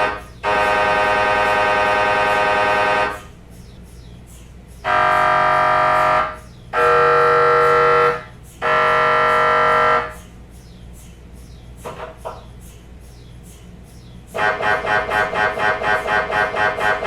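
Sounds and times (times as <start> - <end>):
mri scanner buzzing: 0.0 - 3.3, 4.9 - 10.2.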